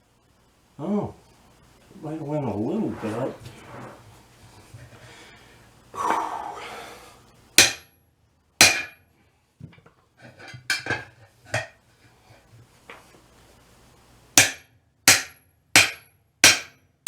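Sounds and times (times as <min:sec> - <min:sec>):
tire scraping on rim: 0:02.7 - 0:04.3.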